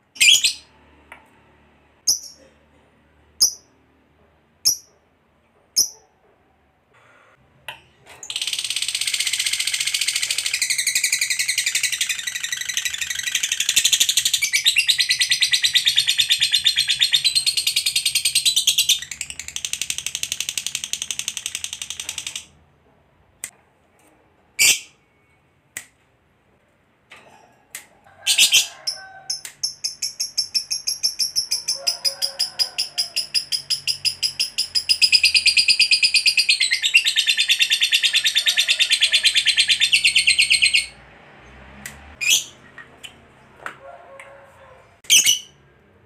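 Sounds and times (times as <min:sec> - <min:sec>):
bird chirps: 0:02.0 - 0:02.5, 0:29.6 - 0:31.8
lovebird chattering trill: 0:02.1 - 0:02.4.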